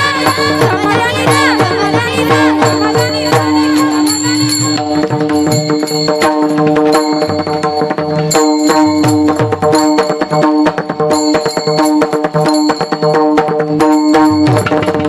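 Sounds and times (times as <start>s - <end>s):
person singing: 0.0s - 5.2s
quick rhythmic drum beat: 0.0s - 15.0s.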